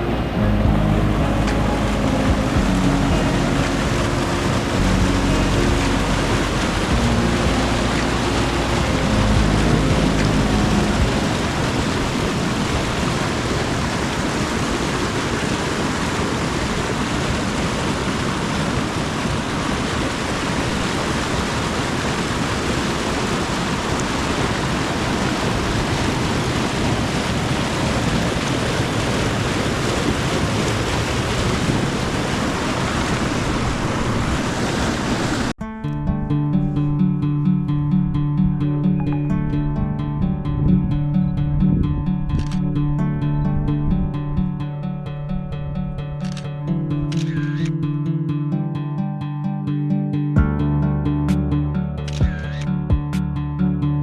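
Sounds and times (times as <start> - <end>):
low hum of steady tones: 0.0 - 13.4
steady rushing noise: 0.0 - 35.6.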